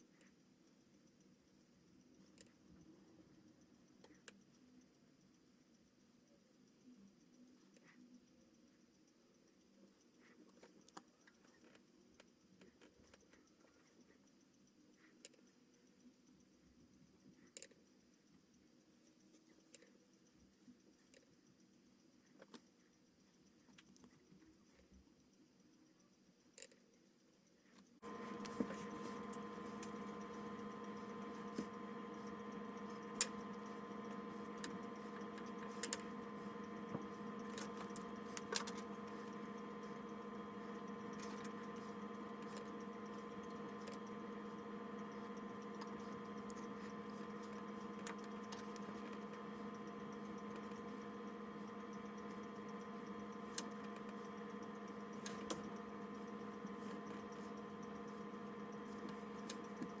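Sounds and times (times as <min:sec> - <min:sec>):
low electrical hum: 0:28.0 - 1:00.0.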